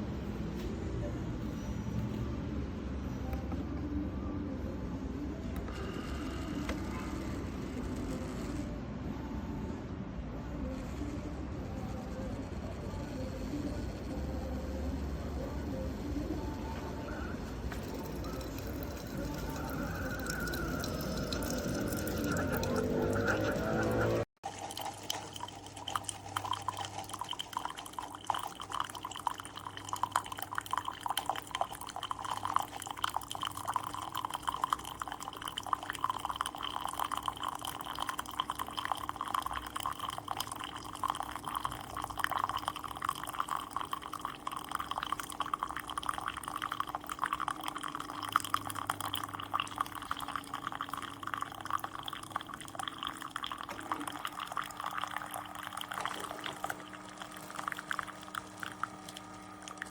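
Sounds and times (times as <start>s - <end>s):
coffee maker humming: 5.2s - 9.3s, 11.9s - 59.9s
water sputtering into cup: 17.7s - 59.9s.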